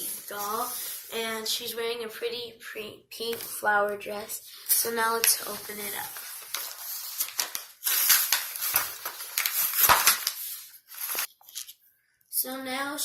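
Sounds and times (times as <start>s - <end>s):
plastic packaging crinkling: 5.2s - 11.7s.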